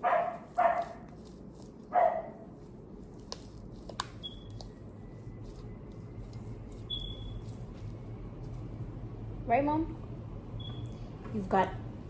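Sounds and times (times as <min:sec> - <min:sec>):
dog barking: 0:00.0 - 0:01.0, 0:01.9 - 0:02.4.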